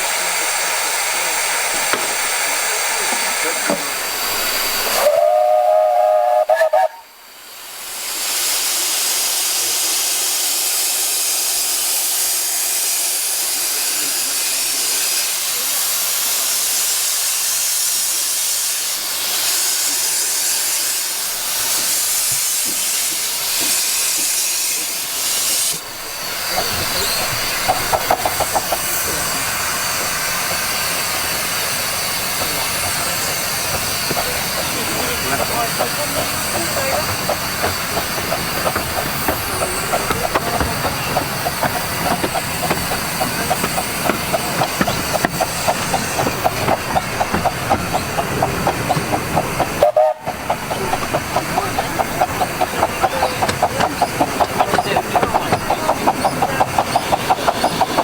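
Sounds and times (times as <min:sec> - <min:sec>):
train running: 0:00.0 - 0:58.0
steam locomotive whistle: 0:04.9 - 0:07.3, 0:49.7 - 0:50.5.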